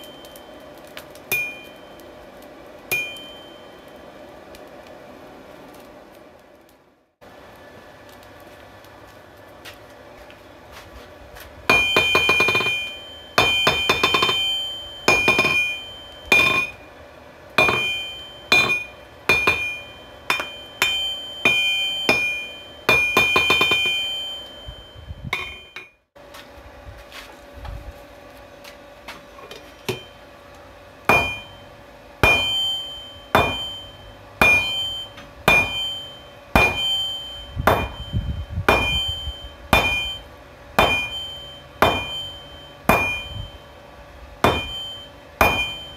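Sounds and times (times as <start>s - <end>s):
hammer ringing on anvil: 0.0s - 0.6s, 1.3s - 2.0s, 2.9s - 4.0s, 11.7s - 16.8s, 17.6s - 26.0s, 29.9s - 30.2s, 31.1s - 43.8s, 44.4s - 45.9s.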